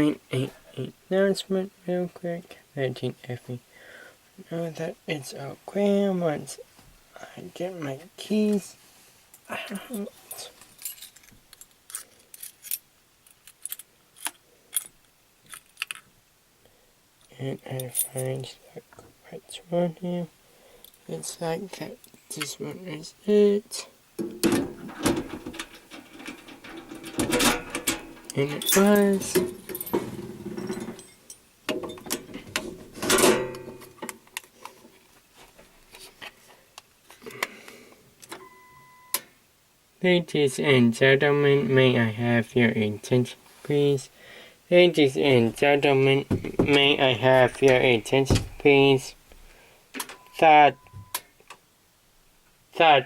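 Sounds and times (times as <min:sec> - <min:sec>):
keys rattling: 0:10.3 - 0:12.8, 0:24.9 - 0:33.4
keys jangling: 0:26.2 - 0:31.4.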